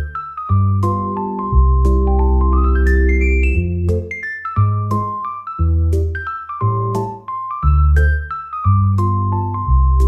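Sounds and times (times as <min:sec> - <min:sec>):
light keyboard tune: 0:00.0 - 0:10.0.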